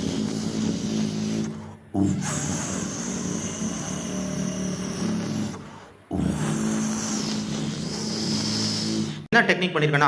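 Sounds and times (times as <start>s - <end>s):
voice imitating engine drone: 0.0s - 9.3s.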